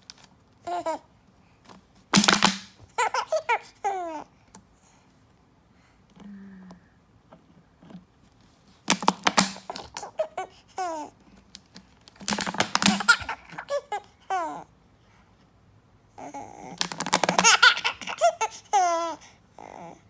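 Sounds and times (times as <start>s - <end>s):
baby laughing: 2.9s - 4.3s, 9.7s - 11.1s, 12.7s - 14.6s, 16.2s - 19.7s.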